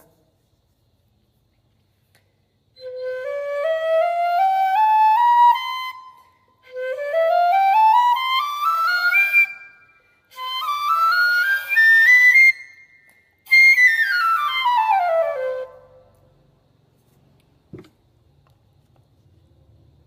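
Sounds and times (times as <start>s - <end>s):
bamboo flute playing scales: 2.7s - 16.4s.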